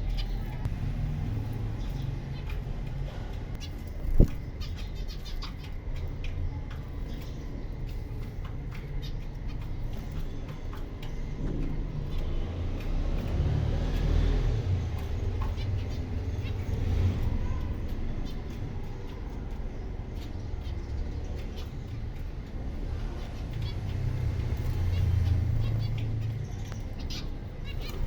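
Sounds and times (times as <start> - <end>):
steady low rumble: 0.0 - 12.8
finches chirping: 0.0 - 28.0.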